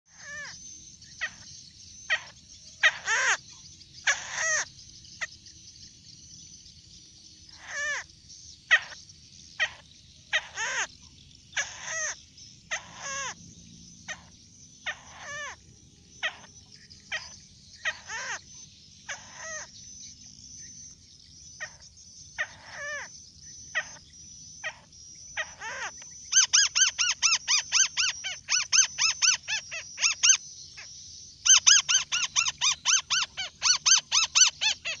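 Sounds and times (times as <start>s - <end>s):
crake calling: 2.1s - 5.3s, 7.5s - 8.1s, 8.7s - 13.4s, 14.1s - 19.8s, 21.6s - 35.0s.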